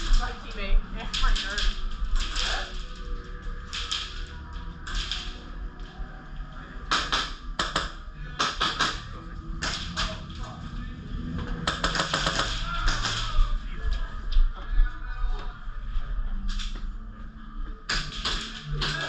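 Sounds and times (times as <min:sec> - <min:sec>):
airsoft guns firing: 0:06.9 - 0:10.2, 0:11.6 - 0:13.4.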